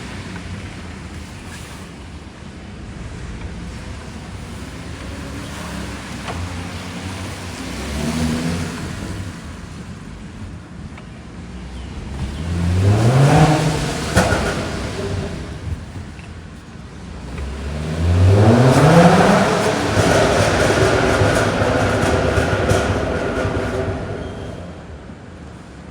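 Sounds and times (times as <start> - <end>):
car engine revving: 0.0 - 10.7, 11.4 - 25.9
sharp exhaust pop: 12.2 - 16.4, 17.2 - 25.0.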